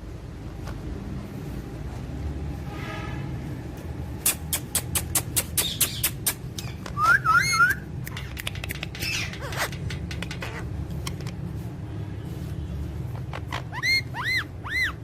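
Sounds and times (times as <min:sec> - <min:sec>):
parrot clicks: 0:04.2 - 0:07.0, 0:07.9 - 0:11.4
parrot squawking: 0:04.2 - 0:11.2, 0:13.1 - 0:15.0
parrot whistling: 0:04.5 - 0:07.9, 0:13.7 - 0:15.0.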